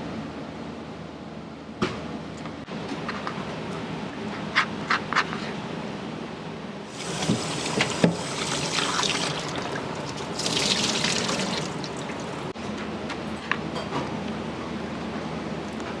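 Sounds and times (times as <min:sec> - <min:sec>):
tap water running into sink: 0:06.9 - 0:12.6.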